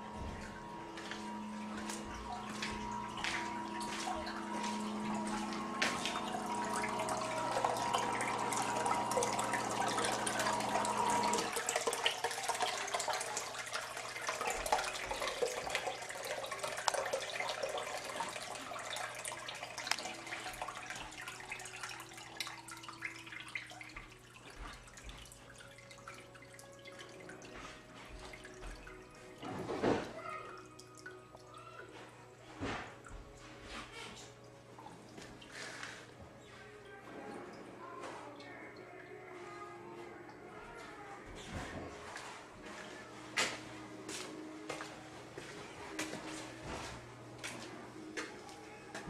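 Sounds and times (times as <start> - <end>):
steady hum: 0.0 - 12.1
water running and splashing: 0.0 - 39.4
water trickling and dripping: 0.0 - 49.0.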